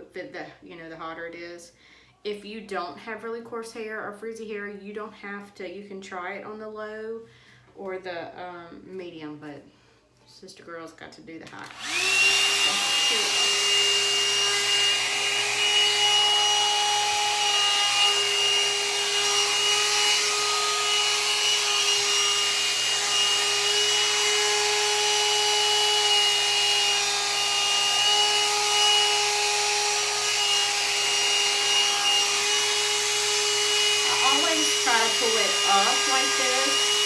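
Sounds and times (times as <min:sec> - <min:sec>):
hair dryer brush motor whine: 0:11.6 - 0:37.0.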